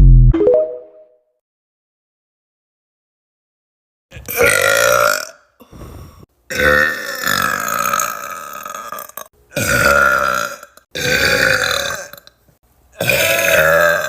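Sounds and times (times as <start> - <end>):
woman burping loudly: 6.5 - 12.3, 13.0 - 14.0.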